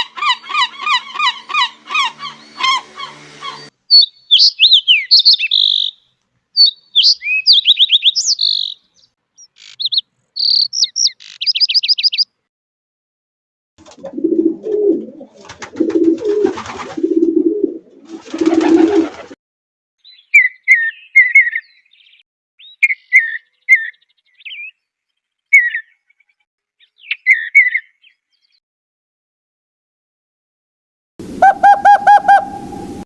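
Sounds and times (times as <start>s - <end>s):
bird chirps: 3.5s - 12.4s, 20.0s - 24.9s, 25.5s - 28.6s, 31.3s - 33.0s
bird cooing: 14.0s - 16.4s, 31.2s - 33.0s.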